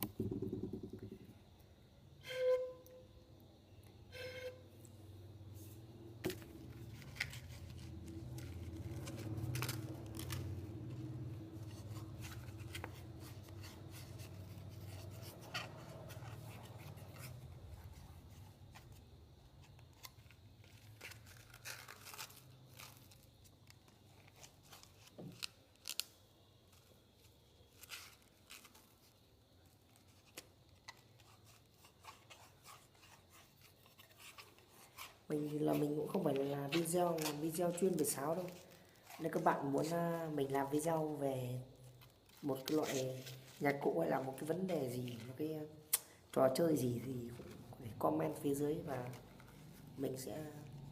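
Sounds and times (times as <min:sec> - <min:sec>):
knife scraping bamboo: 0:02.2 - 0:02.9, 0:04.1 - 0:04.6, 0:06.2 - 0:19.0, 0:19.6 - 0:23.4, 0:30.2 - 0:39.4.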